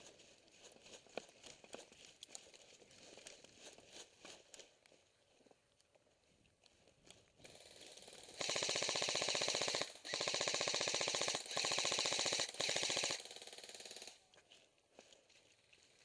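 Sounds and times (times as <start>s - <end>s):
airsoft gun firing full-auto bursts: 7.4s - 14.2s.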